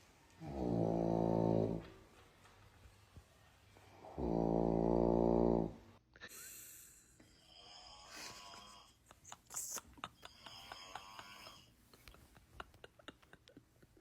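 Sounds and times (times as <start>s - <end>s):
loud snore: 0.4s - 1.8s, 4.0s - 5.8s.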